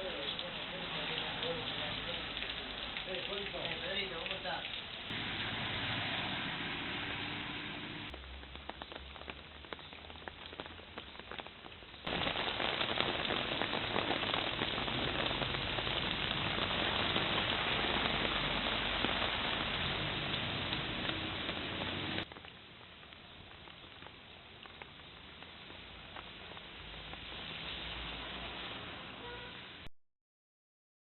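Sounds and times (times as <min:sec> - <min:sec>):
torrential rain on hard surfaces: 0:00.0 - 0:29.9
water drops ticking: 0:01.1 - 0:05.2.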